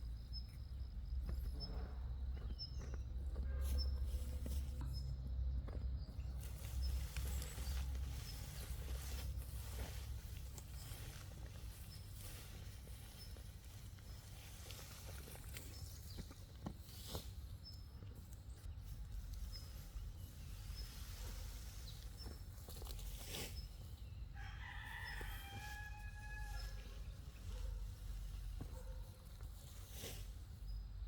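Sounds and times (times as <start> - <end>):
rooster crowing: 24.4 - 27.1.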